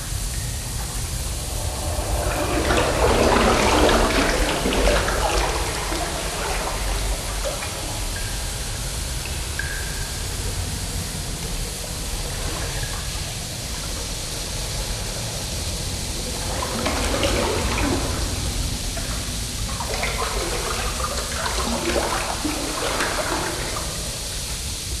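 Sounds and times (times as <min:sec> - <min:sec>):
underwater low rumble with hiss: 0:00.0 - 0:25.0
water bubbling and gurgling: 0:00.0 - 0:25.0.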